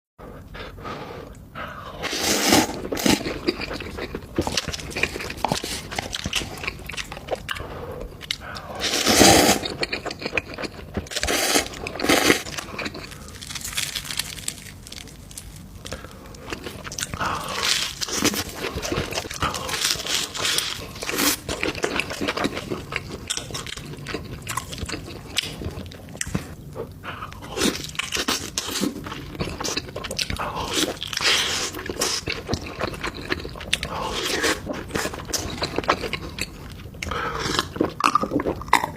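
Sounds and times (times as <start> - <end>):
person chewing crunchy food: 1.3 - 38.9.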